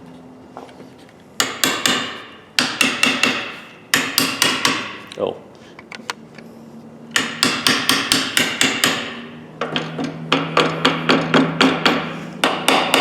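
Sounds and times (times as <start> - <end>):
hammer striking metal: 1.4 - 5.0, 7.1 - 13.0.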